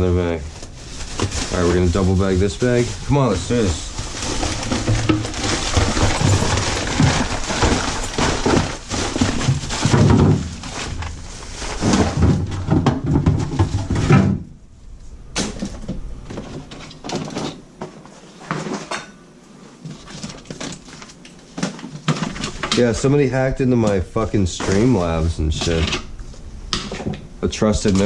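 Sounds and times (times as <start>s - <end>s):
plastic trash bag rustling: 0.0s - 18.8s, 19.6s - 26.6s
knocks and clatter: 4.0s - 14.5s.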